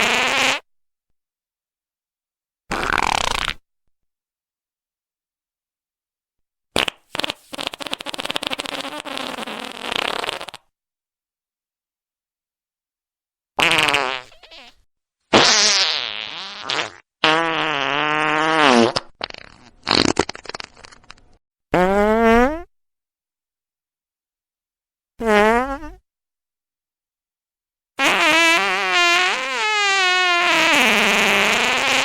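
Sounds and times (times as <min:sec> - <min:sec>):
farts: 0:00.0 - 0:00.7, 0:02.7 - 0:03.6, 0:06.8 - 0:10.7, 0:13.6 - 0:22.7, 0:25.2 - 0:26.0, 0:28.0 - 0:32.0.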